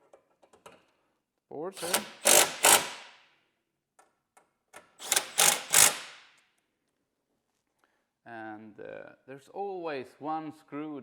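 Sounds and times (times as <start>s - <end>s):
power screwdriver clicking: 1.8s - 3.1s, 5.0s - 6.2s.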